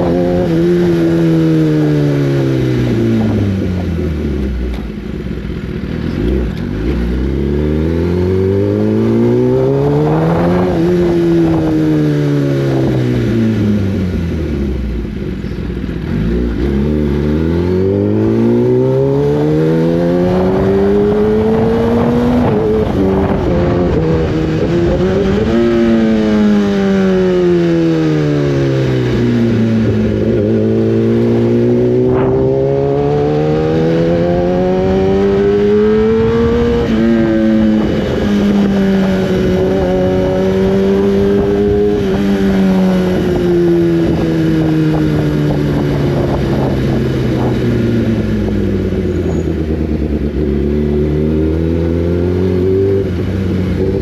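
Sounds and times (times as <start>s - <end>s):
motorcycle engine revving: 0.0s - 54.0s.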